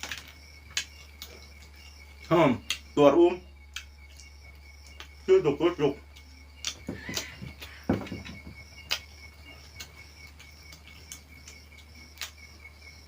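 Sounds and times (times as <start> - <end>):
insects chirping in a high trill: 0.0 - 13.0
knock: 6.8 - 8.6.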